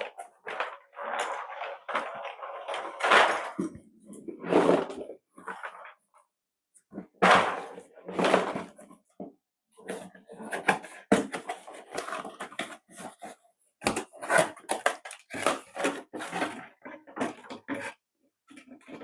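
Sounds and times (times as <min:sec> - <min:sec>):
plastic parts clicking and rattling: 0:09.9 - 0:19.0.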